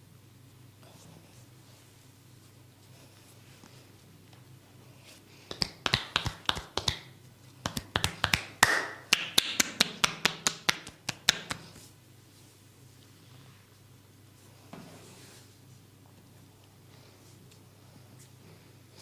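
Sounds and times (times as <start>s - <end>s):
rhythmic hand slaps: 5.5s - 11.8s.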